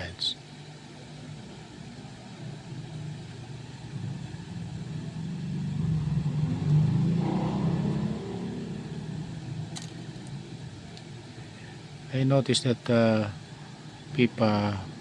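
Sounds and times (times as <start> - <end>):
passing motor vehicle rumble: 3.7 - 11.0.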